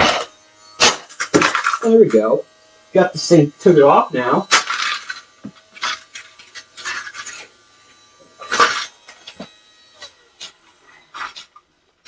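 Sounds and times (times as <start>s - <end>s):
plastic toy parts clicking and rattling: 4.5s - 7.5s.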